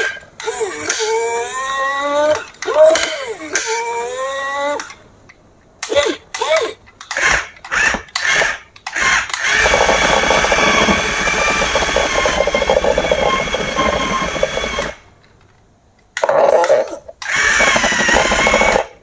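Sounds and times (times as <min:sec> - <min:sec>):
short bursts of sound: 0:00.0 - 0:05.0
toy electric motor whining: 0:00.0 - 0:05.0, 0:05.8 - 0:15.0, 0:16.6 - 0:19.0.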